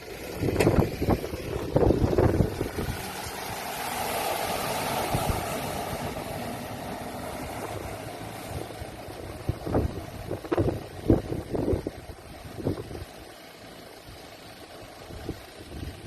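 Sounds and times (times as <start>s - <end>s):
vehicle passing: 0.0s - 11.8s
wind buffeting microphone: 0.2s - 3.8s, 4.6s - 13.2s, 15.0s - 16.0s.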